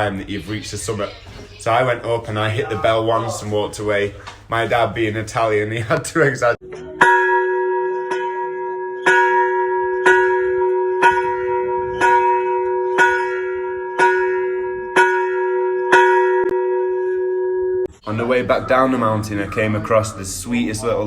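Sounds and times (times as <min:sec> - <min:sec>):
bell ringing: 0:06.8 - 0:18.2.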